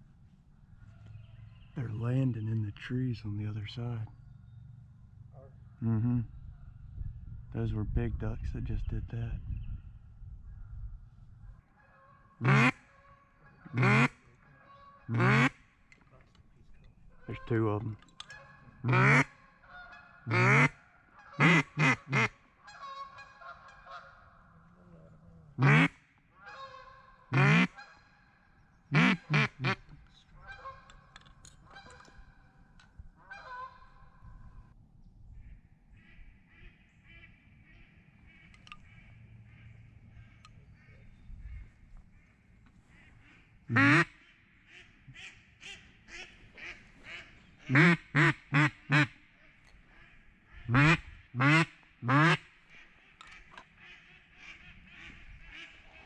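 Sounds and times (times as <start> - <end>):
duck call quacking: 11.8 - 15.6, 18.3 - 24.2, 25.6 - 28.0, 28.9 - 31.0, 33.2 - 33.9, 42.9 - 56.0
soft steady quacking: 11.8 - 15.8, 17.0 - 28.0, 28.9 - 32.5, 35.4 - 56.0.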